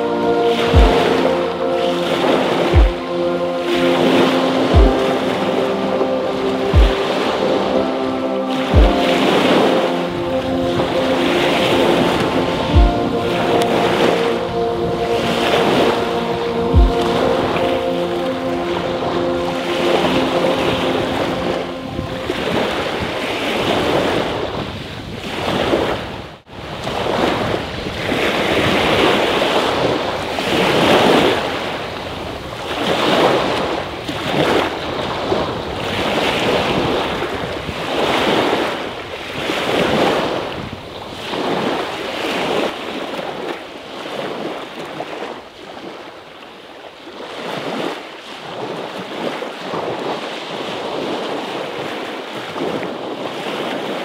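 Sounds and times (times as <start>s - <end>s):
small waves washing onto shore: 0.0s - 54.0s.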